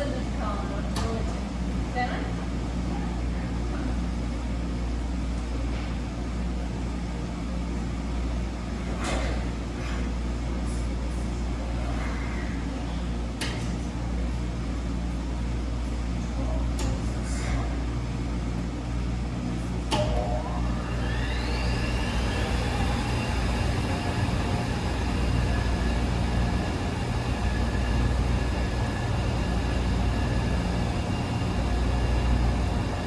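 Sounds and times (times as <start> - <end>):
washing machine humming: 0.0 - 33.0
drum motor whine rising: 20.3 - 33.0.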